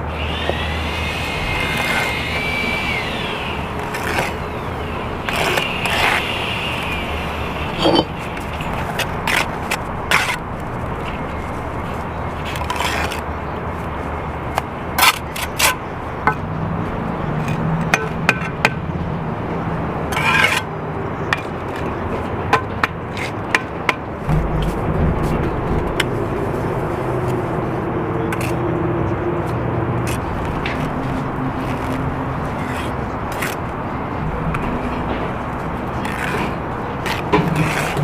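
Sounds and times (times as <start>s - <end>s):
low motor hum: 0.0s - 9.2s, 24.3s - 32.6s
trowel scraping mortar: 0.2s - 10.4s, 31.6s - 33.6s, 36.0s - 38.0s.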